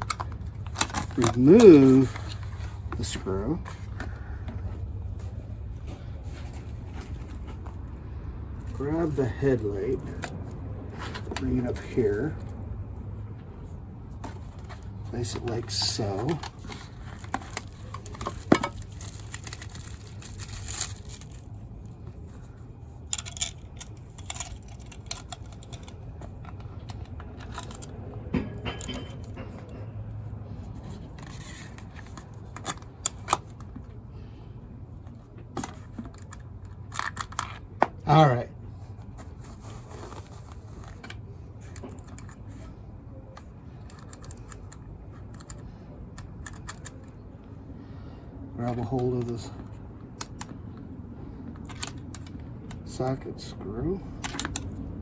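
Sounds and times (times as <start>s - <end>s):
low steady hum: 0.0s - 55.0s
metal clicks of tools and screws: 23.1s - 29.6s.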